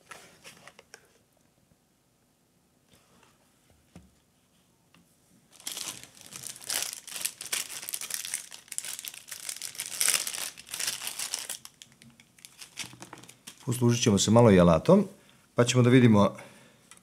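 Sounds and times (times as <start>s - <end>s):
plastic packaging crinkling: 5.5s - 13.8s.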